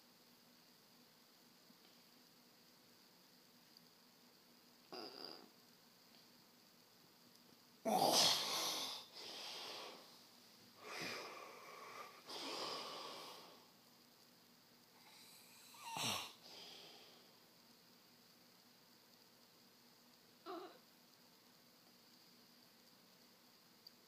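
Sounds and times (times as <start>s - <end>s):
loud snoring: 15.2s - 16.4s.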